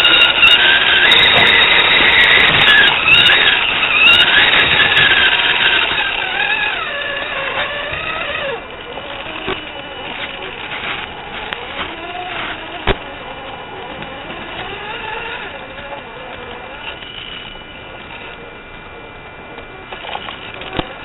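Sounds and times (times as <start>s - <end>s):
toy truck motor whine: 0.0s - 18.5s, 19.6s - 21.0s.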